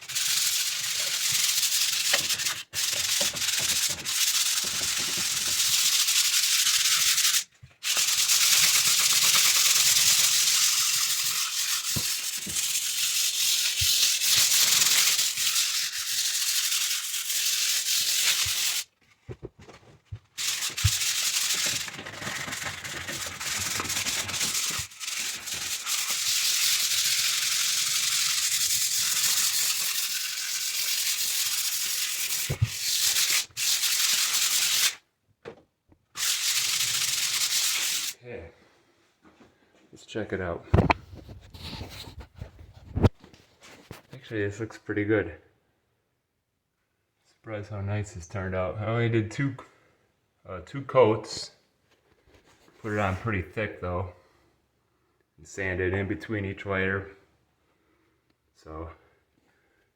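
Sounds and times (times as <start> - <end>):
sanding drywall patch: 0.0 - 19.0, 20.3 - 35.0, 36.2 - 38.2.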